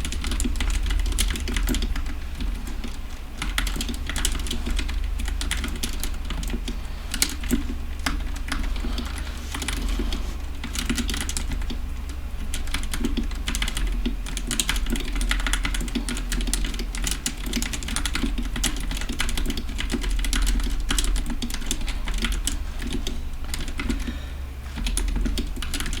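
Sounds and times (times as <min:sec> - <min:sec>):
mechanical keyboard typing: 0:00.0 - 0:09.9, 0:10.7 - 0:24.1, 0:24.7 - 0:26.0.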